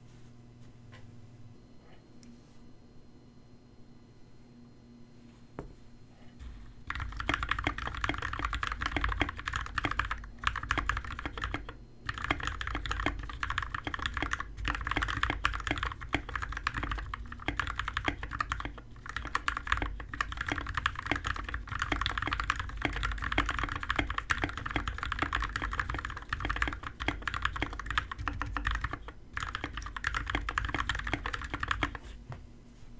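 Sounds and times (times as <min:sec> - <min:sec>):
mechanical keyboard typing: 0:06.8 - 0:32.0.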